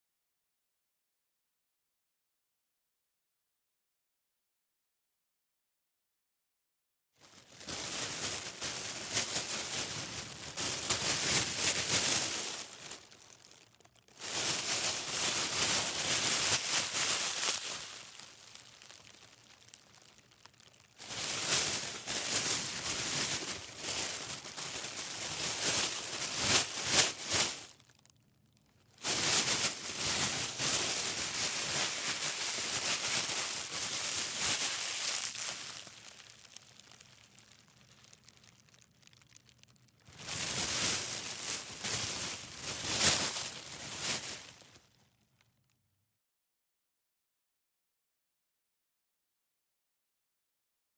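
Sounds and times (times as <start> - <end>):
plastic bag crinkling: 7.2 - 45.1.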